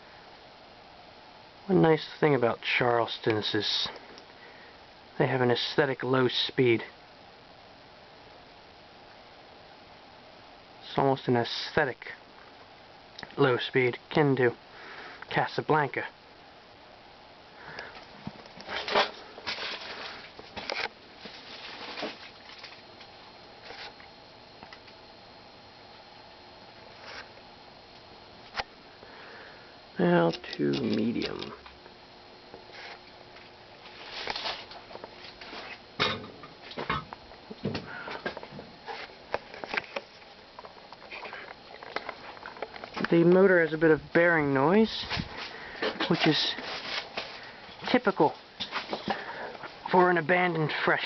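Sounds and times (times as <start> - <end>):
ceiling fan running: 0.0 - 51.0
fan bearing clicks and ticks: 30.2 - 31.8.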